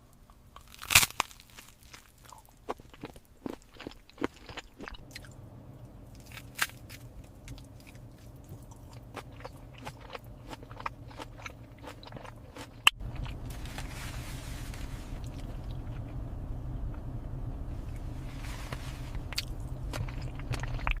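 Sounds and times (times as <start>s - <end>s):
steady low hum: 0.0s - 21.0s
chewing crunchy food: 0.3s - 5.3s, 6.1s - 13.4s, 19.2s - 21.0s.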